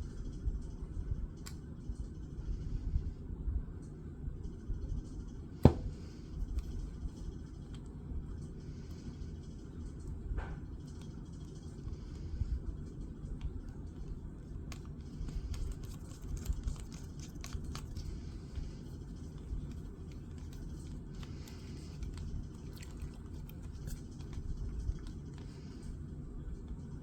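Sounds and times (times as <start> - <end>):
small clicks and scrapes: 6.0 - 26.0.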